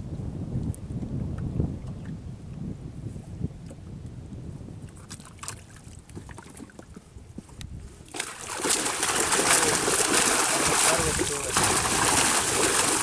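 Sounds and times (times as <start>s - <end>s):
wind rumbling on microphone: 0.0s - 13.0s
water splashing: 8.1s - 13.0s.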